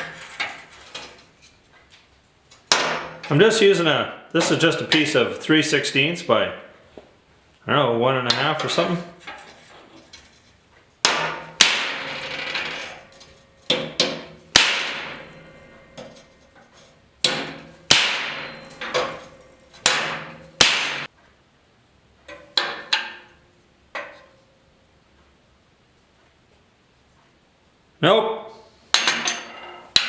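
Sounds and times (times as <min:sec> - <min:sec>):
hammer striking steel bar: 0:02.7 - 0:03.3, 0:11.0 - 0:13.1, 0:13.7 - 0:16.3, 0:17.2 - 0:21.1, 0:29.0 - 0:30.0.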